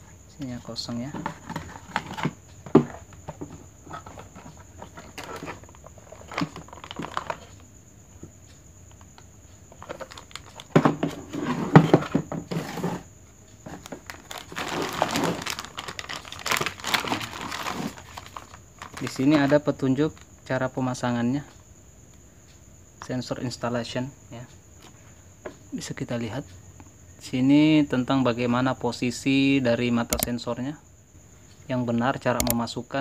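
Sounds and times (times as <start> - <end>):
packaging crinkling and rustling: 3.9 - 7.6, 9.7 - 10.8, 13.7 - 19.6
sharp clicks and knocks: 30.1 - 30.3, 32.4 - 32.6.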